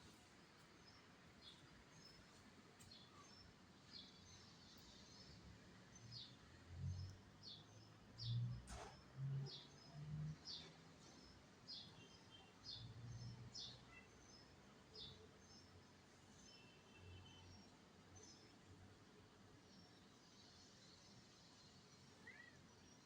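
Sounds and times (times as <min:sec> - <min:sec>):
faint bird chirps: 0:22.0 - 0:23.0.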